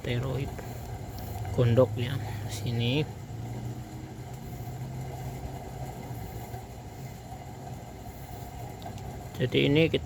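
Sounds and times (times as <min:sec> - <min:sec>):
low machine hum: 0:00.0 - 0:10.0.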